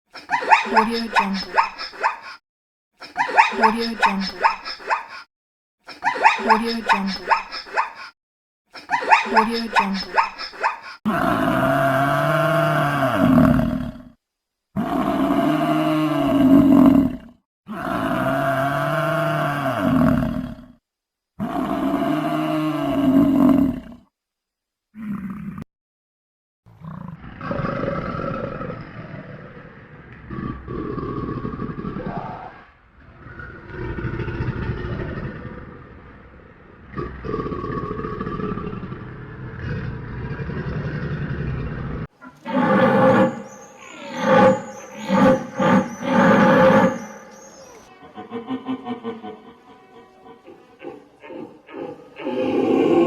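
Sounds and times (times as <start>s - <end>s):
large animal roaring: 11.1s - 14.2s, 14.8s - 20.8s, 21.4s - 24.0s, 26.8s - 47.9s, 50.8s - 53.0s.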